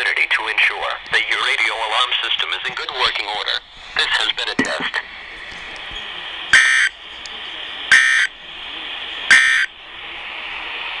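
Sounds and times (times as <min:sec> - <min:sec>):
radio hiss: 0:00.0 - 0:11.0
data tone bursts: 0:06.5 - 0:07.0, 0:07.9 - 0:08.3, 0:09.3 - 0:09.7.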